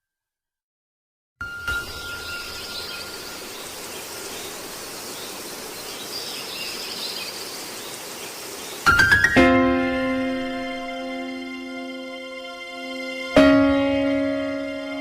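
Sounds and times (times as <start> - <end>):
faint high wavering chirps: 1.4 - 9.0
background hiss: 1.7 - 13.4.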